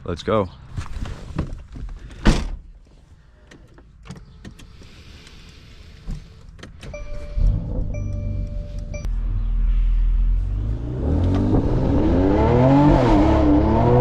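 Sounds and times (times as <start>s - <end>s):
engine low rumble: 3.3s - 14.0s
electronic chime: 7.0s - 9.2s.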